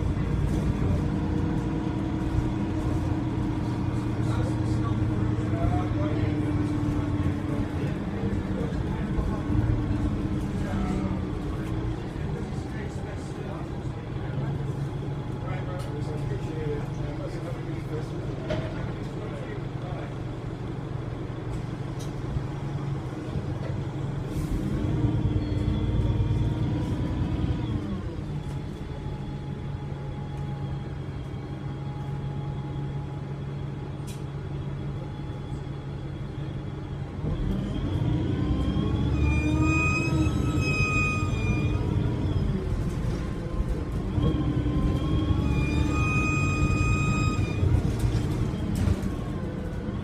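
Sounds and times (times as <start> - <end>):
bus engine running: 0.0 - 50.0
turbo whistle: 45.4 - 47.6.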